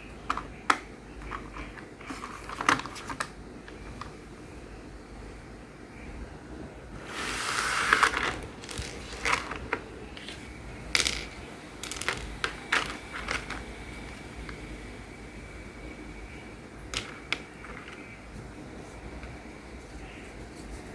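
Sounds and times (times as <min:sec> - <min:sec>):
packaging rustling: 0:07.1 - 0:10.5
plastic toy parts clicking: 0:07.5 - 0:10.4, 0:11.0 - 0:14.6, 0:16.9 - 0:18.1.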